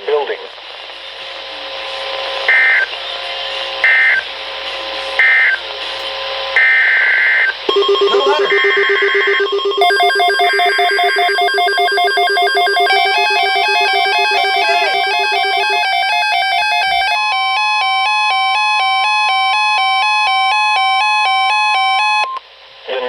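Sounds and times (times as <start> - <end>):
steady single tone: 6.6 - 17.1
electronic warbling alert tones: 7.7 - 17.5.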